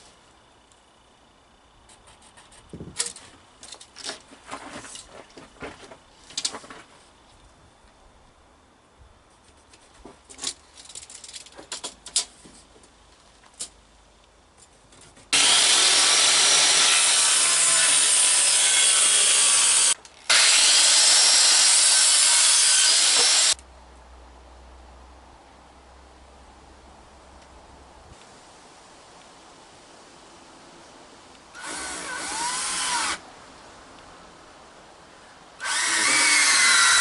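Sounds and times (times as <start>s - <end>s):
power tool cutting wood: 15.4s - 23.6s, 31.6s - 33.2s, 35.6s - 37.0s.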